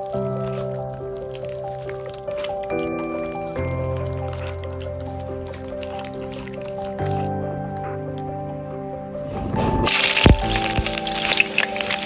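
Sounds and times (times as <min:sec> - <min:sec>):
background music: 0:00.0 - 0:12.0
hot oil sizzling in a pan: 0:09.9 - 0:12.0.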